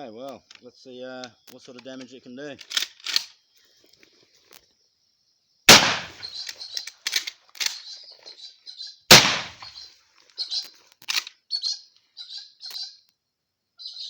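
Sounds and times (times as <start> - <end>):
shotgun shots: 5.7 - 6.4, 9.1 - 9.8.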